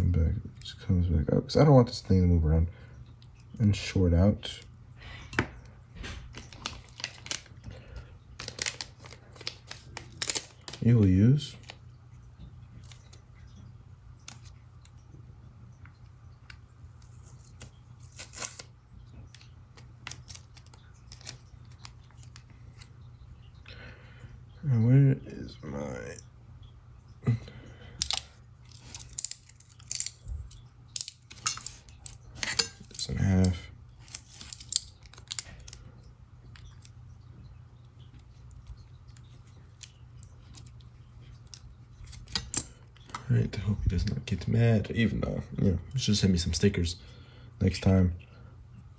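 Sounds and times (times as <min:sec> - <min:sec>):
steady low hum: 0:00.0 - 0:48.9
clicks and rustles of handling: 0:04.4 - 0:23.6, 0:28.0 - 0:44.6.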